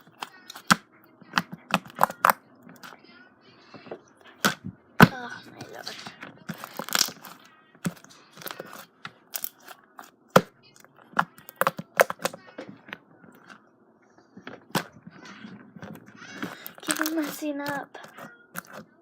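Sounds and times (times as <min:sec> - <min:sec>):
slime popping and crackling: 0:06.5 - 0:07.4, 0:09.3 - 0:09.7, 0:16.5 - 0:18.0.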